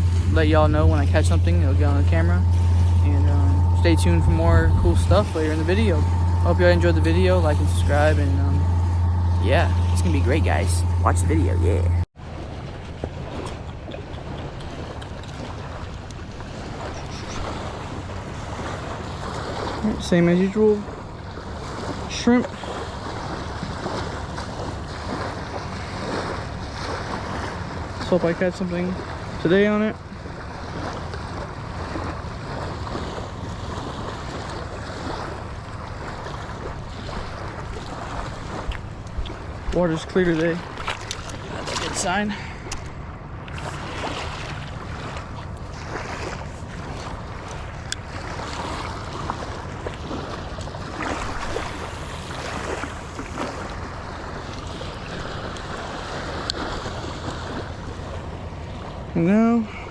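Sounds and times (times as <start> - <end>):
wind buffeting microphone: 0.0 - 12.1.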